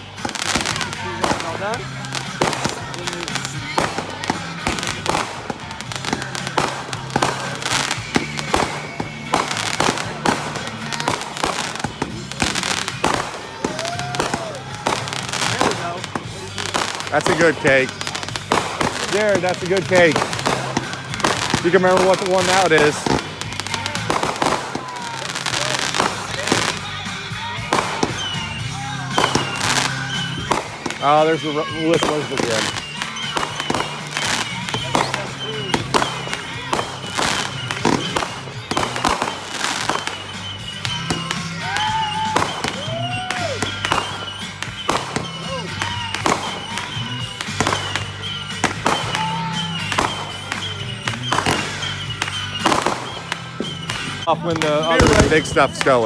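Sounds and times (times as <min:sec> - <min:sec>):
faint music: 0:00.0 - 0:56.0
fireworks bangs: 0:00.0 - 0:56.0.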